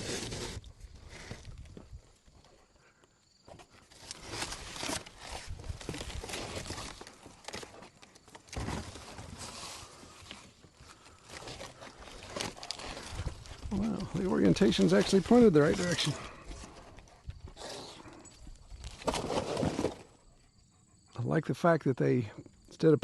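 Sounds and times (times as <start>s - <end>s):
scuffing and rustling handling noises: 3.4s - 17.5s.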